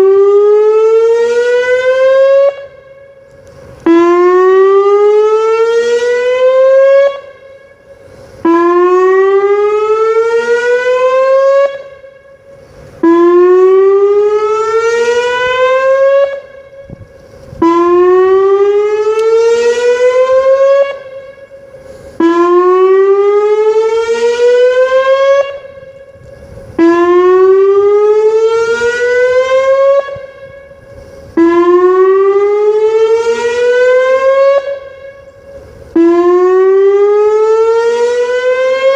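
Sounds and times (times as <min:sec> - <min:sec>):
warning siren rising sweep: 0:00.0 - 0:38.9.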